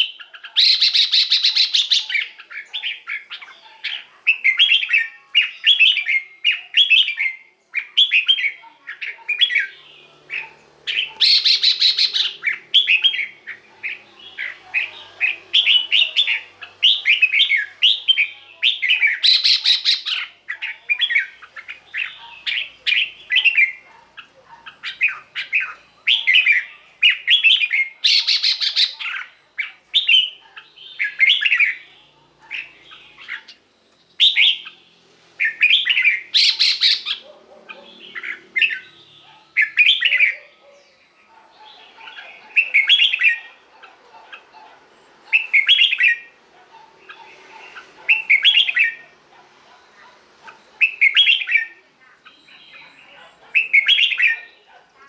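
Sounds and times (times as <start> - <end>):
harsh rasping bird call: 0.0 - 2.4, 9.6 - 20.4, 24.8 - 29.4, 35.4 - 37.2
bird singing warbled phrases: 0.0 - 55.0.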